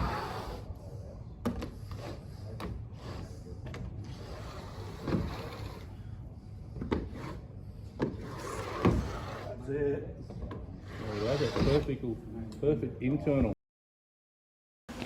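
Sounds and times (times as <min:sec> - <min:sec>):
tool scraping plasterboard corner: 0:01.7 - 0:06.0, 0:06.8 - 0:09.6, 0:10.8 - 0:12.0.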